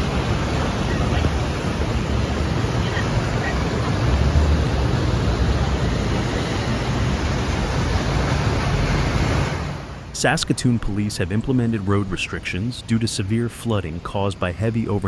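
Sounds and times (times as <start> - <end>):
loud rushing noise with rumble: 0.0 - 10.1.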